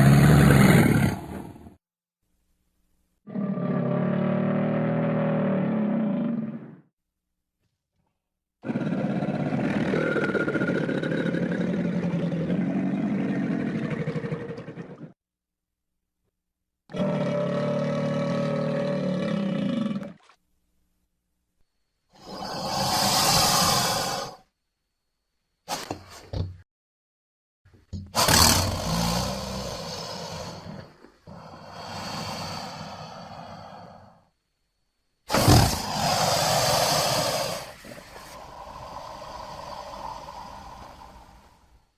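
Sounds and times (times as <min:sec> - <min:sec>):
crocodile bellowing: 0:00.0 - 0:01.5, 0:03.3 - 0:06.8, 0:08.6 - 0:15.2, 0:16.9 - 0:20.3, 0:22.2 - 0:24.5, 0:28.1 - 0:34.3, 0:35.3 - 0:41.8.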